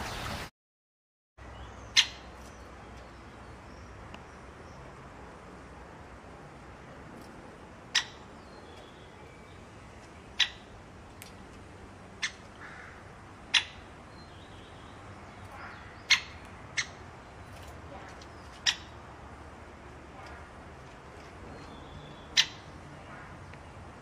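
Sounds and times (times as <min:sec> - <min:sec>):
bird sharp calls: 0:01.8 - 0:03.2, 0:07.9 - 0:09.6, 0:10.3 - 0:10.7, 0:12.2 - 0:19.2, 0:21.4 - 0:23.5.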